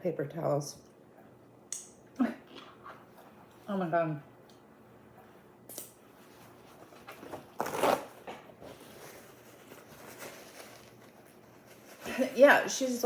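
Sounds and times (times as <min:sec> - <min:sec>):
paper towel tearing: 0:07.5 - 0:08.3.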